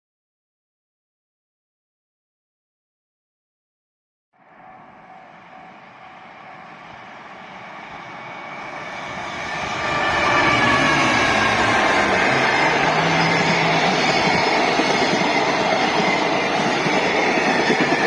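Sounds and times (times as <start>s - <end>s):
freight train approaching: 4.4s - 18.0s.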